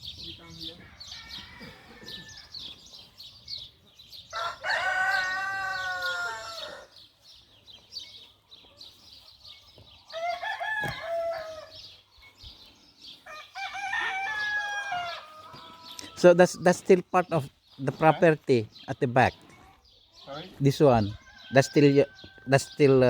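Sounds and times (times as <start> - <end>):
birds chirping: 0.0 - 23.0
roosters crowing: 0.5 - 3.2, 4.1 - 7.2, 10.0 - 12.0, 13.1 - 17.0, 20.4 - 23.0.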